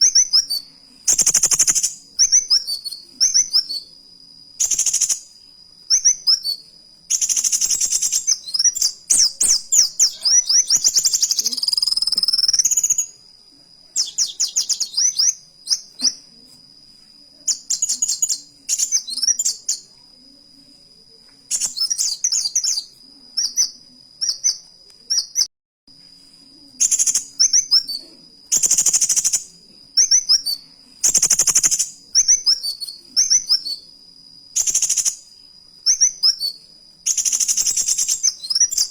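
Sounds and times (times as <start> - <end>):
bird singing rapid chirps: 0.0 - 3.9, 4.6 - 13.2, 14.0 - 16.2, 17.5 - 19.8, 21.5 - 25.5, 26.8 - 33.9, 34.6 - 35.2, 35.8 - 38.9.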